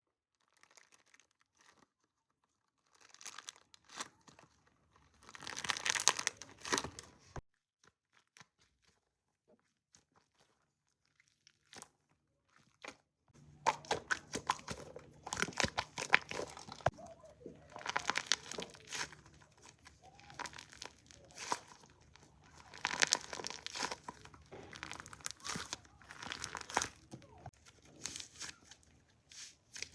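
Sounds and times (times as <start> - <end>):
slime crackling and popping: 0.3 - 9.2, 9.9 - 29.9.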